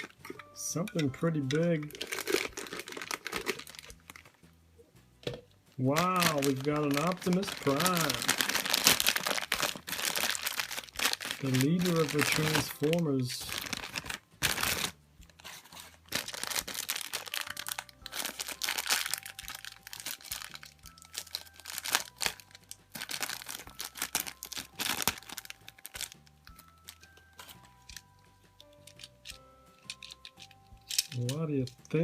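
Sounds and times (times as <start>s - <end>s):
soft background music: 0.0s - 32.0s
packaging crinkling and tearing: 1.8s - 4.4s, 5.8s - 28.1s.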